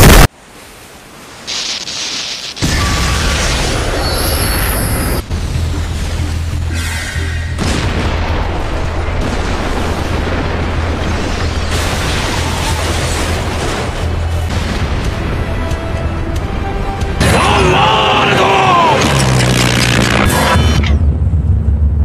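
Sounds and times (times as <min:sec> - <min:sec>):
background music: 0:05.2 - 0:09.4, 0:13.4 - 0:20.6
booming explosion rumble: 0:07.6 - 0:15.5.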